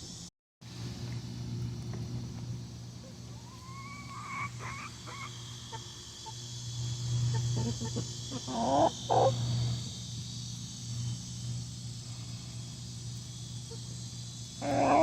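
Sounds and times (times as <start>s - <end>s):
steady low hum: 0.0s - 15.0s
chicken calling: 3.4s - 6.4s, 7.3s - 9.4s, 14.6s - 15.0s
chicken chirps: 3.4s - 6.4s, 7.3s - 9.4s.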